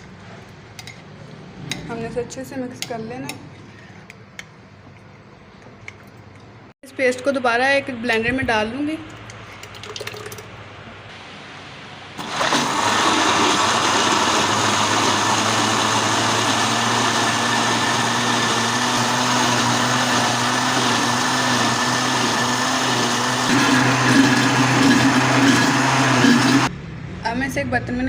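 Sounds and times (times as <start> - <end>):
electric blender running: 12.2 - 26.7.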